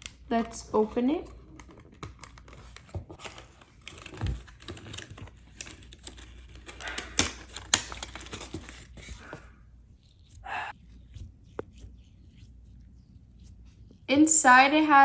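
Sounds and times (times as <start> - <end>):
packaging crackling and rustling: 1.2 - 10.3.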